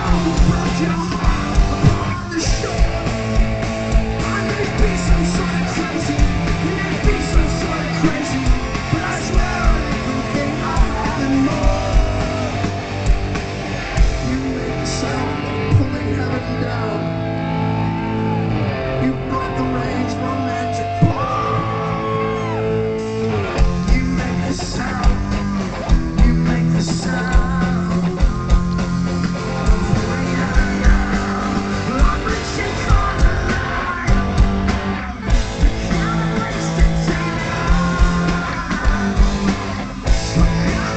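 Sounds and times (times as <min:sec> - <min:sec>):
person singing: 0:00.0 - 0:03.2, 0:04.2 - 0:12.8, 0:23.6 - 0:28.8, 0:29.4 - 0:34.5, 0:35.2 - 0:40.9
drums: 0:00.0 - 0:40.9
guitar: 0:00.0 - 0:40.9
rock music: 0:00.0 - 0:40.9.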